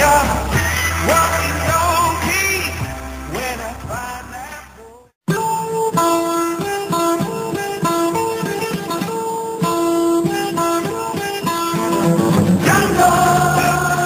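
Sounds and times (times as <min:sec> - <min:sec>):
plucked guitar melody: 0:05.3 - 0:14.0.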